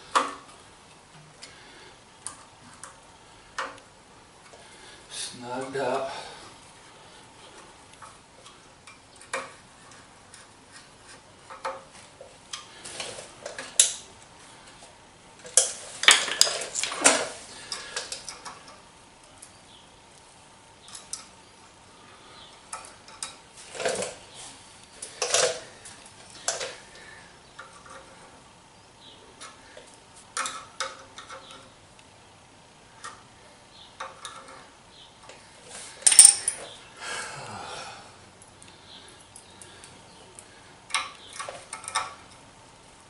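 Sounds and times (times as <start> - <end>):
tools and screws clinking on steel: 15.4 - 18.8, 22.7 - 24.2, 25.0 - 27.0, 34.0 - 36.8, 39.2 - 42.5.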